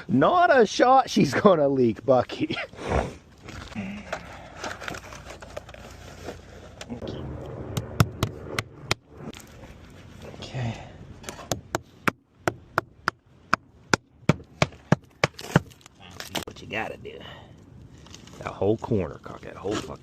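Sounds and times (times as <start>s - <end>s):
hammer strikes: 7.6s - 9.1s.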